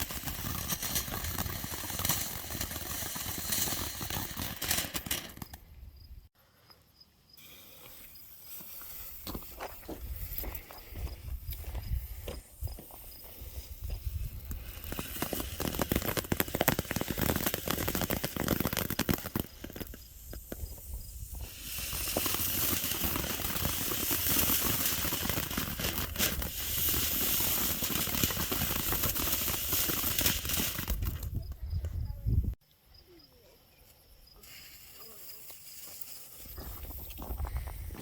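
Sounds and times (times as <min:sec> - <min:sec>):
firework fountain hissing: 0:00.0 - 0:05.5, 0:12.0 - 0:31.2, 0:34.4 - 0:38.0
firework fountain crackling: 0:00.0 - 0:05.6, 0:12.5 - 0:31.6, 0:34.4 - 0:38.0.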